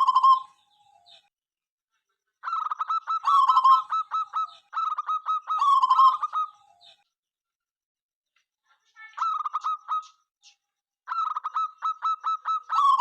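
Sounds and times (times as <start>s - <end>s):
dove cooing: 0.0s - 0.6s, 2.4s - 6.8s, 9.2s - 10.2s, 11.1s - 13.0s.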